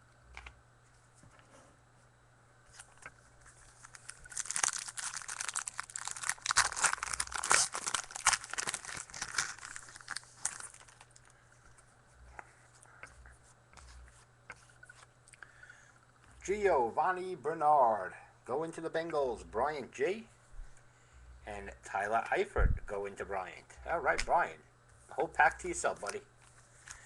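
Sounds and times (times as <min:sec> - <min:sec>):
plastic wrapper crinkling and tearing: 0:02.7 - 0:11.4.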